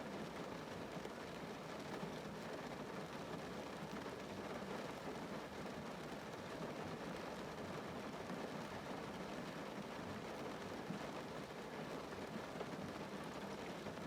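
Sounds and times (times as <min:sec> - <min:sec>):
rain on a car roof: 0:00.0 - 0:14.0.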